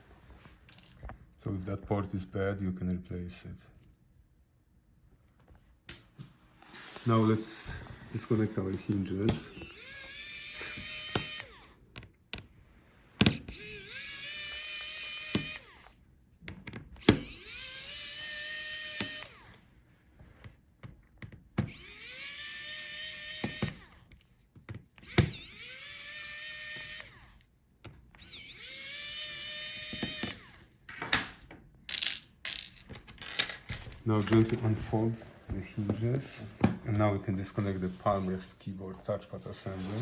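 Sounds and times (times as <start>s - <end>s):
electric screwdriver whining: 8.0s - 11.8s, 13.2s - 16.0s, 17.0s - 19.6s, 21.6s - 24.1s, 25.0s - 27.4s, 28.2s - 31.0s.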